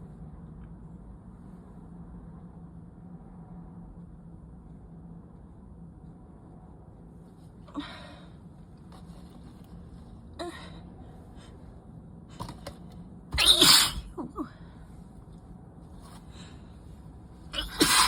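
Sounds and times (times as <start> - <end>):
person sneezing: 13.3 - 14.6, 17.6 - 18.0.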